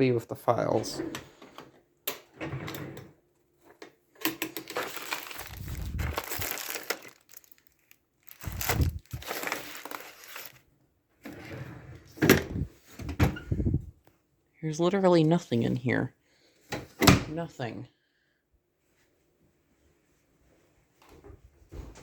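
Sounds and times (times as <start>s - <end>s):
paper and plastic rustling: 4.2s - 10.7s.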